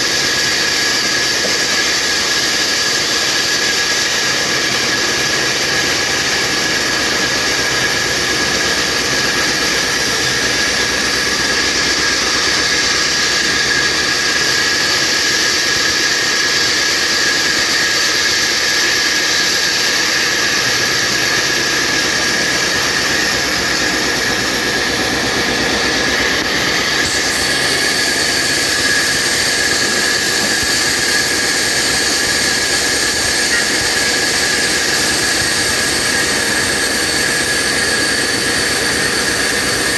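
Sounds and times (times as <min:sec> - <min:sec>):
saw blade high whine: 0:00.0 - 0:39.9
sawmill mechanical noise: 0:00.0 - 0:39.9.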